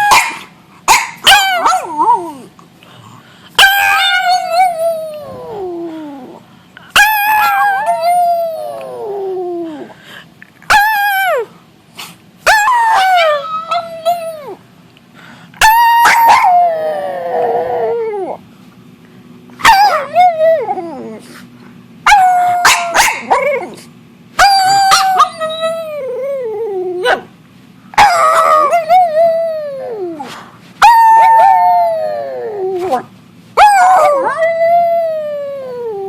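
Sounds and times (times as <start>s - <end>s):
dog howling: 7.0s - 9.9s, 15.6s - 18.4s, 24.4s - 27.2s, 28.0s - 33.0s, 33.6s - 36.0s.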